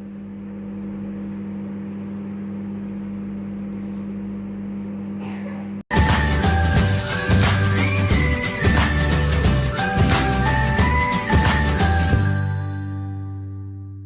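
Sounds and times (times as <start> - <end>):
low machine hum: 0.0 - 14.0
loud music: 5.9 - 13.1.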